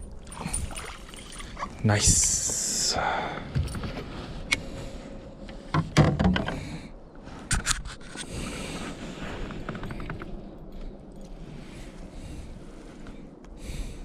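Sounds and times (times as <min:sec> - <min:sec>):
steady background hiss: 0:00.0 - 0:06.1.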